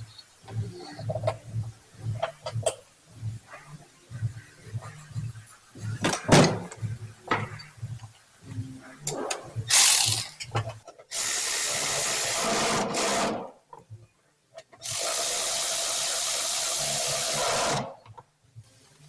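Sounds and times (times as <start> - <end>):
power tool whirring: 11.1 - 13.4, 14.8 - 17.9.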